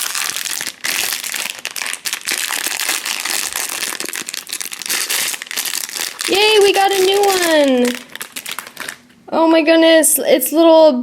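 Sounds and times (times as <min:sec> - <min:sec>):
wrapper crinkling: 0:00.0 - 0:09.2.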